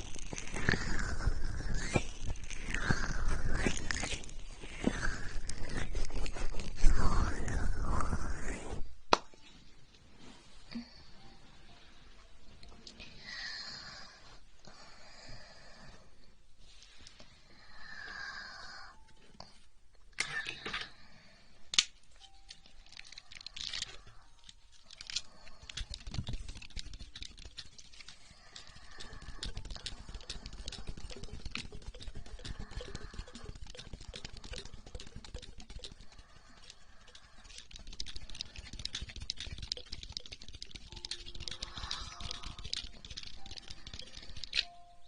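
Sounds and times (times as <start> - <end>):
soft rubbing on microphone: 0.0 - 9.0.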